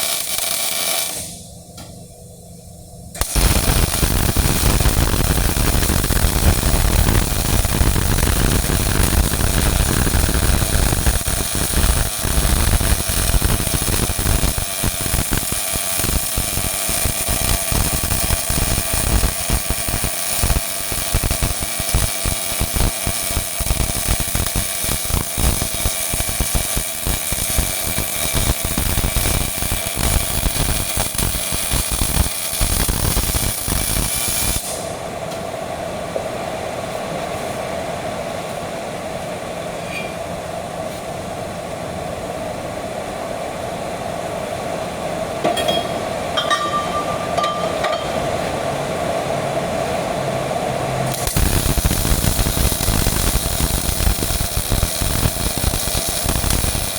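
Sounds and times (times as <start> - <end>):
welding arc crackling and hissing: 0.0 - 1.6, 3.2 - 35.0, 50.8 - 56.9
steady tone: 45.4 - 48.8.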